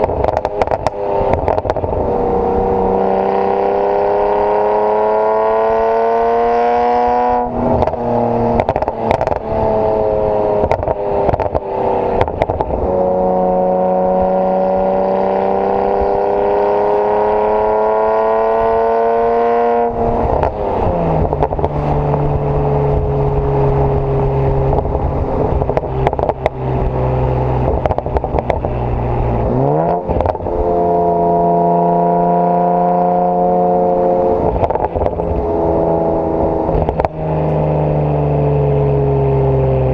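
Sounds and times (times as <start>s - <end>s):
exhaust crackles and pops: 0.0s - 2.1s, 7.7s - 9.6s, 10.6s - 13.0s, 20.2s - 30.5s, 34.3s - 37.7s
car engine revving through gear shifts: 0.0s - 39.9s.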